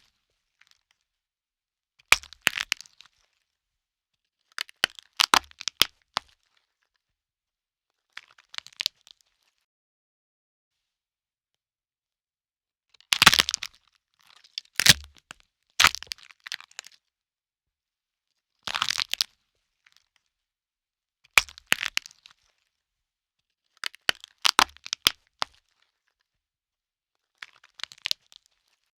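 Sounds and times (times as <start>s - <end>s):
bone cracks and snaps: 13.2s - 13.7s, 14.8s - 15.2s, 15.8s - 16.2s.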